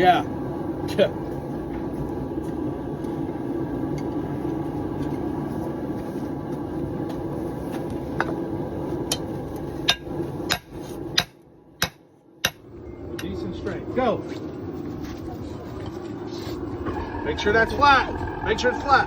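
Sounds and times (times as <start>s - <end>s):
hammer striking hot steel: 9.0s - 13.4s
steady roar: 16.4s - 19.0s.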